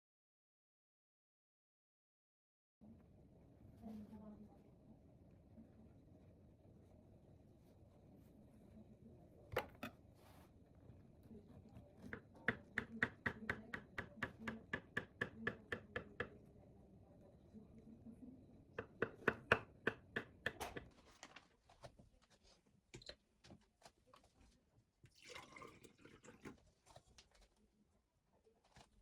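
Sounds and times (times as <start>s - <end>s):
knife chopping on cutting board: 12.0s - 16.3s, 18.8s - 20.9s.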